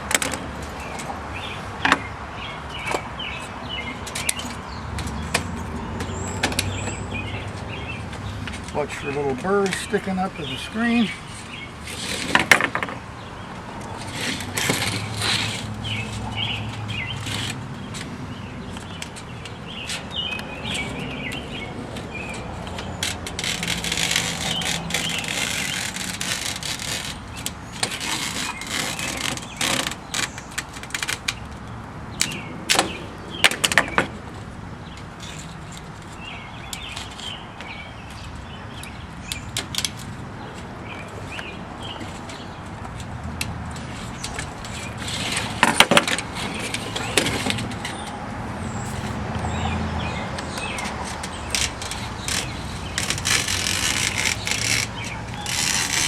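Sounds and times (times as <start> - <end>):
birds chirping: 0.8 - 12.2, 15.8 - 30.6, 44.0 - 56.0
scraping on metal screen: 22.7 - 30.3, 51.4 - 56.0.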